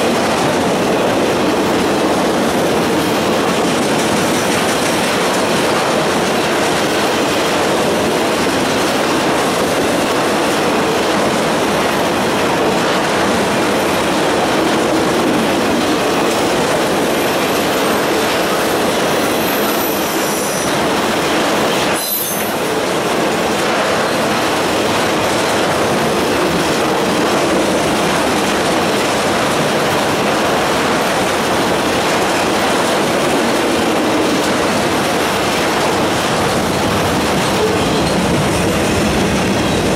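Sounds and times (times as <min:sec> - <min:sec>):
train wheels rumbling and clattering: 0:00.0 - 0:39.9
high-pitched wheel squeal: 0:22.0 - 0:22.6.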